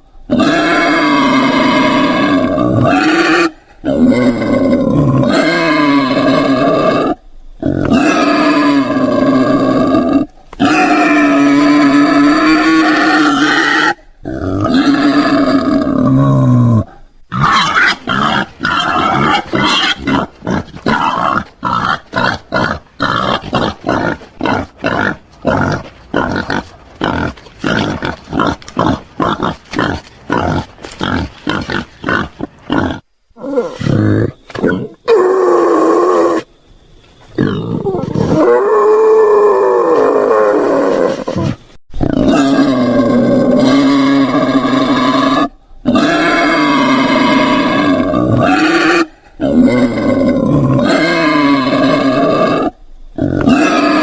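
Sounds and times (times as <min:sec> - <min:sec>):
wild boar calling: 0:00.3 - 0:36.5, 0:37.4 - 0:54.0.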